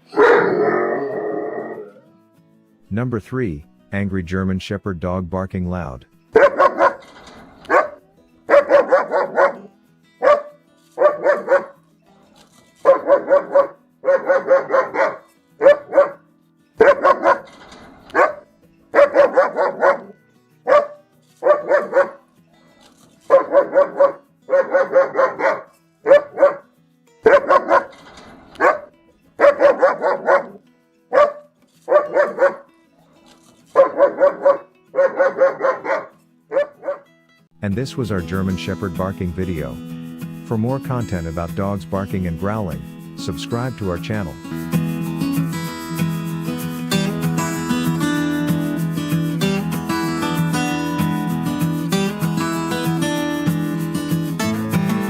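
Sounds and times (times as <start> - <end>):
dog barking angrily: 0.1 - 2.0, 6.4 - 11.8, 12.8 - 16.2, 16.8 - 20.1, 20.7 - 22.2, 23.3 - 26.6, 27.2 - 32.7, 33.7 - 37.1.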